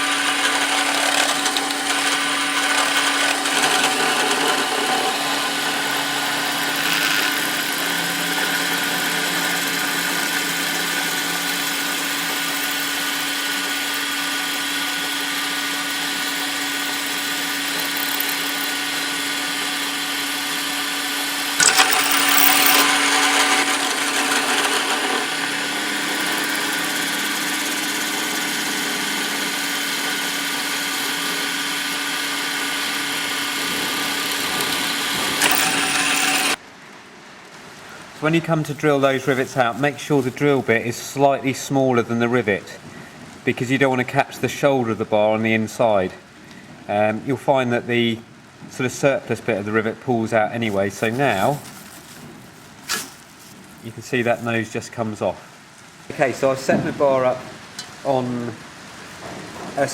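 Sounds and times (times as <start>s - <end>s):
drill press drilling metal: 0.0s - 36.6s.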